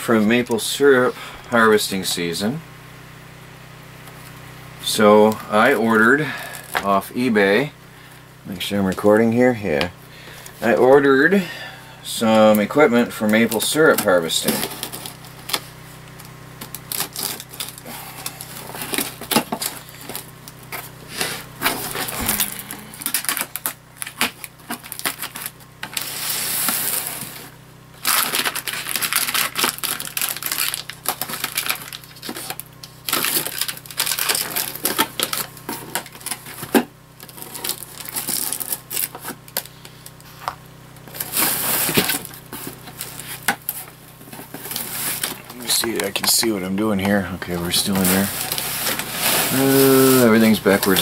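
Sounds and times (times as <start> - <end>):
cardboard and packing material rustling: 12.4 - 15.8, 16.5 - 51.0.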